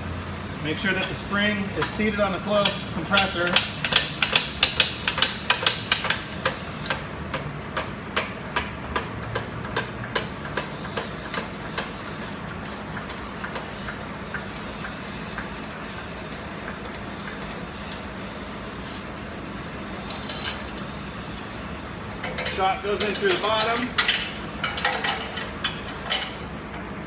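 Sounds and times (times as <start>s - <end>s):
ratchet clicking: 1.0s - 15.1s, 22.2s - 26.8s.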